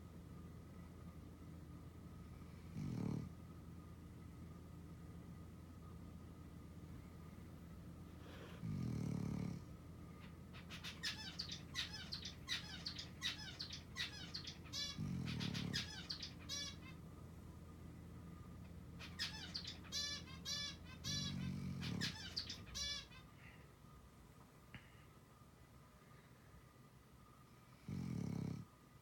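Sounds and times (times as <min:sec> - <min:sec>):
long low snores: 0:02.4 - 0:03.4, 0:08.2 - 0:09.7, 0:27.7 - 0:28.7.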